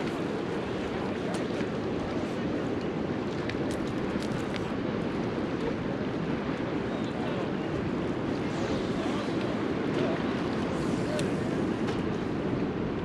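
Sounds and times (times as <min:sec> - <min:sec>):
wind on microphone: 0:00.0 - 0:13.0.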